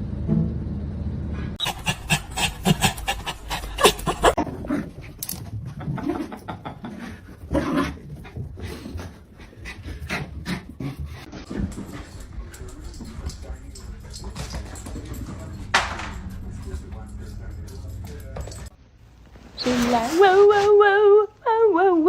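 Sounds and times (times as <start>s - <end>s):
dog panting: 1.6s - 5.8s, 6.8s - 18.7s.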